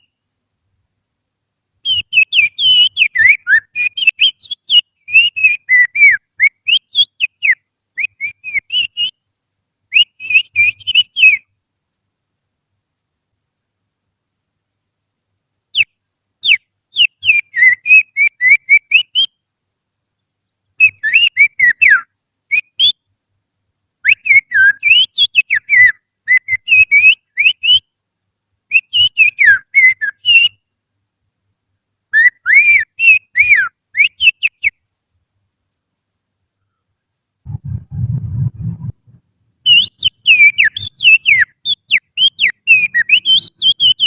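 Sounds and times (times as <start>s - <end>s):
finger whistling birdsong: 1.9s - 9.2s, 10.0s - 11.5s, 20.8s - 23.0s, 24.1s - 27.9s, 28.7s - 30.6s, 32.2s - 34.8s, 39.7s - 44.0s.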